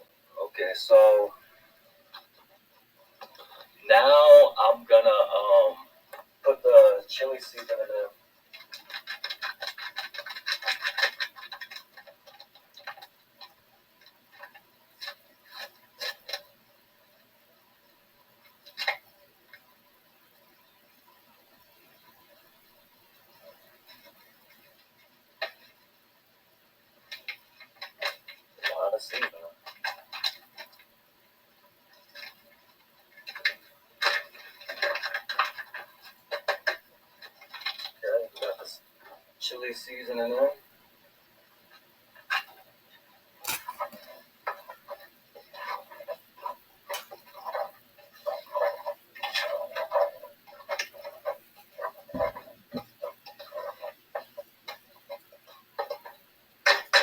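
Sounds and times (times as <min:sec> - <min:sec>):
seasoning packet crinkling: 0:43.4 - 0:44.1.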